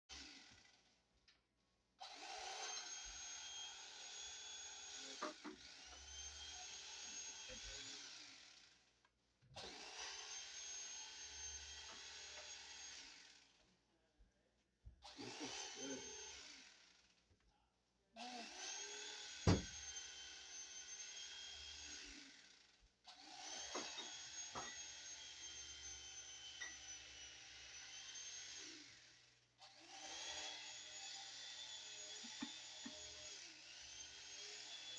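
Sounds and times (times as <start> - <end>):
electric knife motor whining: 2.0 - 8.6, 15.1 - 16.8, 18.2 - 34.9
sharp knock: 19.5 - 19.8.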